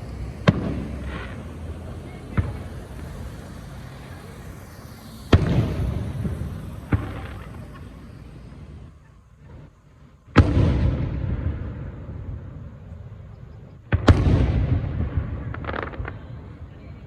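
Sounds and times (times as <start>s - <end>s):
sharp bangs with rumbling: 10.3s - 12.5s, 13.9s - 16.1s.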